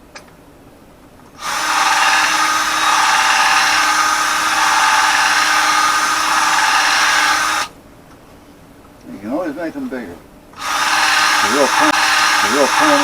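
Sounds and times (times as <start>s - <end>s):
electric drill boring holes: 1.4s - 7.7s, 10.6s - 13.0s.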